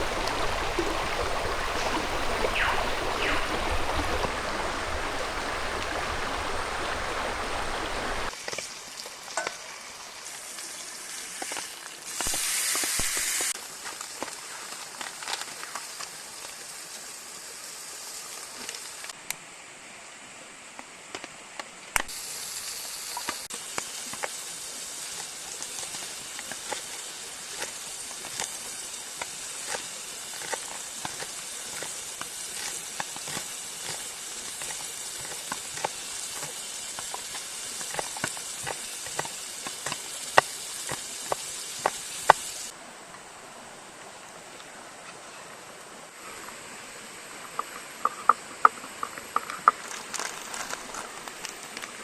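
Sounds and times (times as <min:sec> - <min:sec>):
meat sizzling in a pan: 0:09.5 - 0:18.9, 0:22.1 - 0:42.7.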